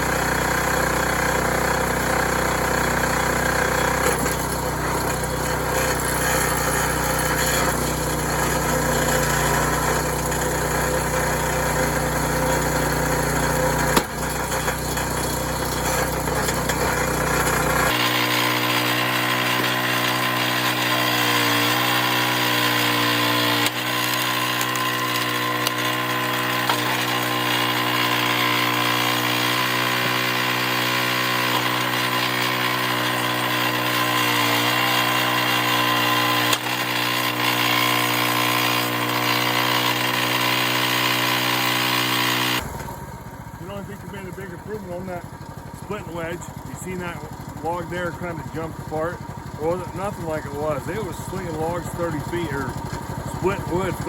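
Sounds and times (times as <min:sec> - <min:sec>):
log splitter engine running: 0:00.0 - 0:54.0
sharp knock: 0:13.9 - 0:14.2.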